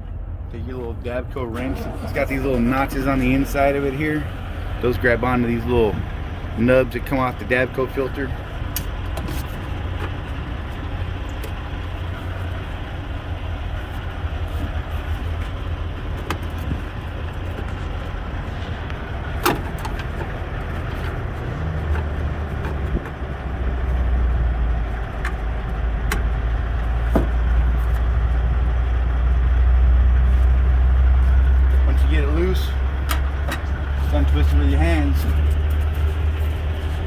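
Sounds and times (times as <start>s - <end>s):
vehicle engines idling: 0.0s - 37.0s
sharp clicks and knocks: 15.4s - 18.0s.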